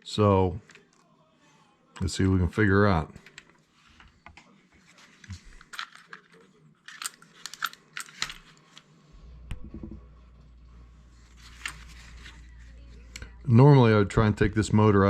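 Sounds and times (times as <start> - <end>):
plastic model clicks and clacks: 5.2 - 8.9
low steady hum: 8.0 - 15.0.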